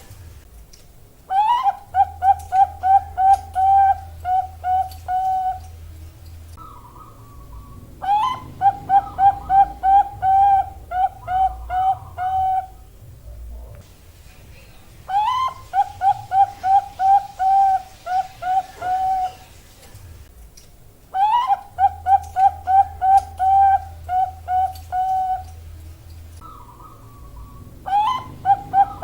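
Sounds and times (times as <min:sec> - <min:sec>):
dove cooing: 0:01.3 - 0:05.8, 0:06.6 - 0:13.7, 0:15.1 - 0:19.7, 0:21.1 - 0:25.6, 0:26.4 - 0:29.0.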